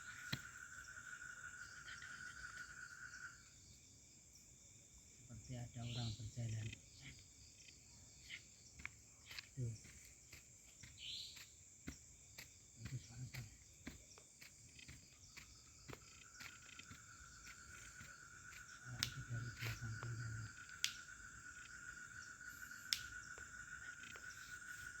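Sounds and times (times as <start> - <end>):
high-pitched insect drone: 0.0 - 3.6, 14.7 - 25.0
insect lower trill: 0.0 - 25.0.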